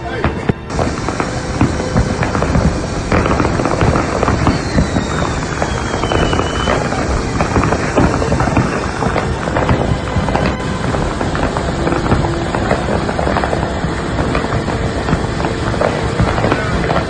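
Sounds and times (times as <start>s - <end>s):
descending whistle: 0.0s - 13.6s
fireworks bangs and pops: 0.0s - 17.0s.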